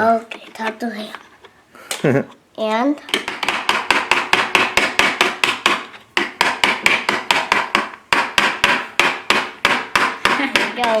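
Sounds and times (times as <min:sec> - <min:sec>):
toy hammer striking a nail: 0:03.1 - 0:11.0.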